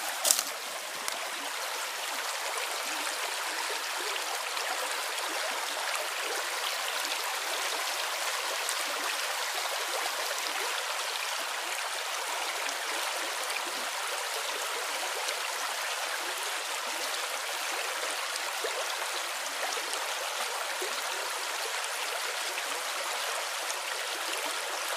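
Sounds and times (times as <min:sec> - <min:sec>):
stream water flowing and splashing: 0:00.0 - 0:24.9.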